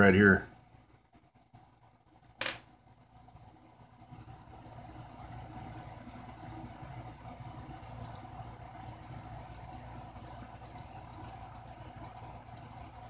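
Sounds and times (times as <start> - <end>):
steady low hum: 0.0 - 13.0
computer controls clicking: 7.9 - 13.0.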